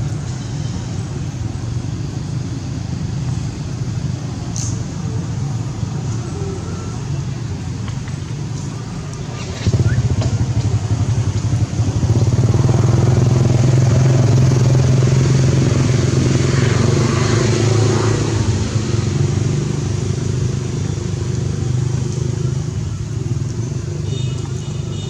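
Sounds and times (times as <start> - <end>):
motor engine running: 9.0 - 17.9.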